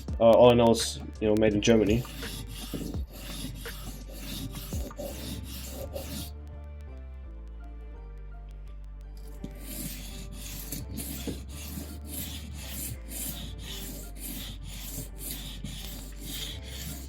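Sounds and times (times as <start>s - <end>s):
knife blade rasping on whetstone: 1.7s - 6.3s, 9.3s - 17.0s.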